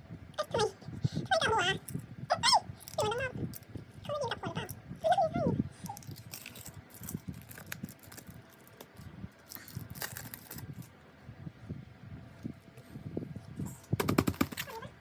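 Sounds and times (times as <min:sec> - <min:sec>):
packaging being unwrapped: 0:05.9 - 0:10.9.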